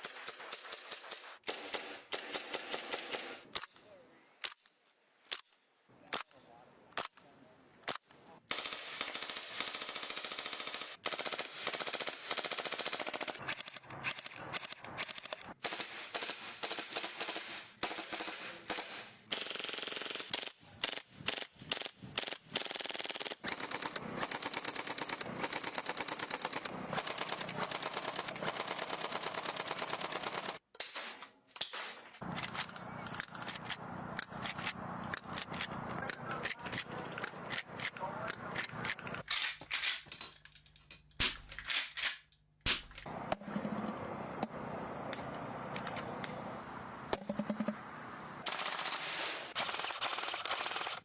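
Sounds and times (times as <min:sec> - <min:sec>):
airsoft guns firing: 0:00.0 - 0:03.6, 0:08.5 - 0:30.6, 0:48.4 - 0:51.0.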